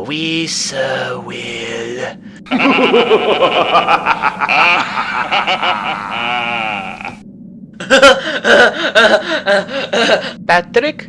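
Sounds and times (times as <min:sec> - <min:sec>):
person making wordless vocal noise: 0:04.6 - 0:07.2.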